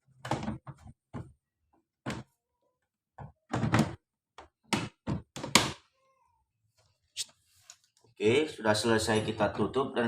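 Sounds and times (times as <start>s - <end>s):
plastic casing knocks and thuds: 0.1s - 1.4s, 3.2s - 5.8s.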